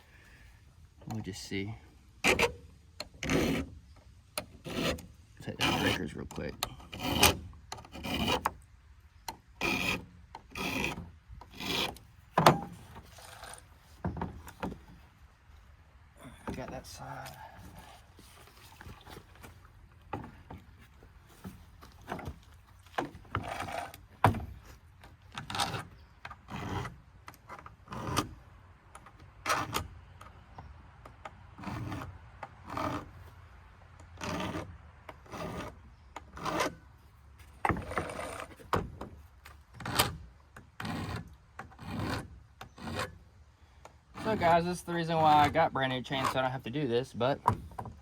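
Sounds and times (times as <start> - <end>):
hand file rasping on metal: 3.2 - 3.7, 4.5 - 8.6, 9.6 - 12.0.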